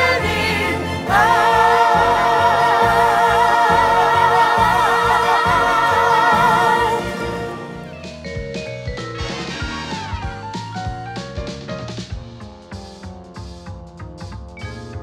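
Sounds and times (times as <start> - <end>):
singers holding a note: 0.0 - 7.5
band playing: 0.0 - 11.1
drums: 0.0 - 15.0.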